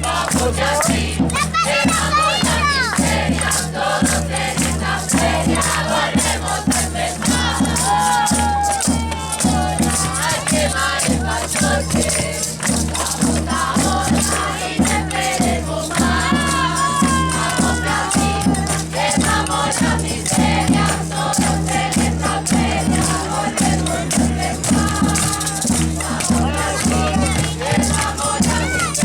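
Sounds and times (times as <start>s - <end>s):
people singing: 0.0s - 29.0s
shaker-like percussion: 0.0s - 29.0s
pulsing bass beat: 16.0s - 29.0s.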